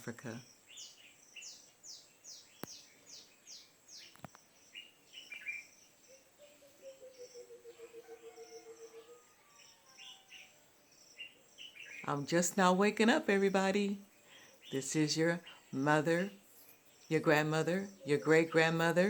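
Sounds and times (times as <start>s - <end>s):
high falling bird chirps: 0.1s - 12.1s
lower pulsing bird call: 2.7s - 12.1s.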